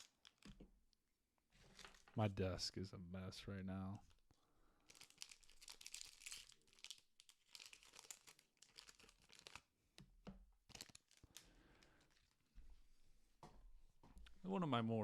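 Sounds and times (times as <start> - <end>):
card clicks and crinkles: 4.9 - 12.3.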